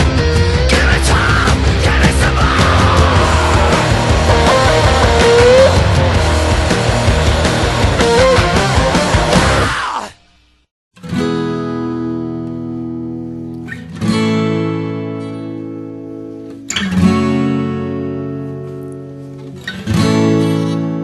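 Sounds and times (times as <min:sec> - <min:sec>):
acoustic guitar strumming chords: 0:00.6 - 0:09.6, 0:11.0 - 0:21.0
loud band music: 0:00.8 - 0:09.6.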